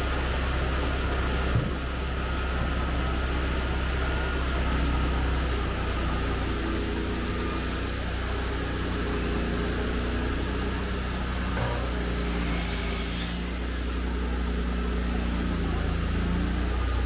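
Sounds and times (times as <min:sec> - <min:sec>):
machine engine humming: 0:02.1 - 0:17.0
short knock: 0:11.6 - 0:12.9.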